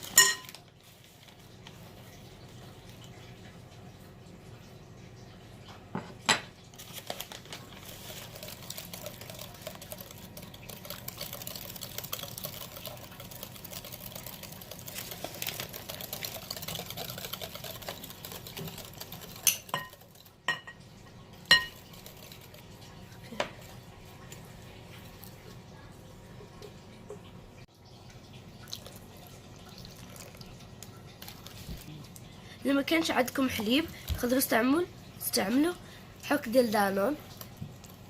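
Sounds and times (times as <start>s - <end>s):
utensil clinking on bowl: 0.0s - 0.6s, 17.3s - 20.8s, 21.5s - 22.2s
batter stirred in bowl: 0.0s - 3.2s, 6.7s - 20.6s, 21.3s - 25.6s, 28.7s - 38.0s.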